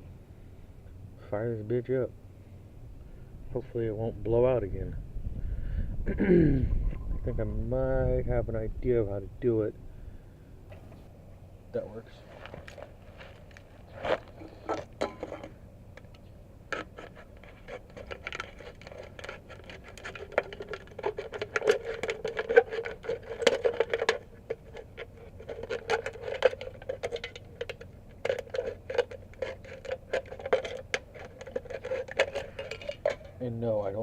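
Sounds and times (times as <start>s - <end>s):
aluminum can being cut: 16.7s - 33.3s.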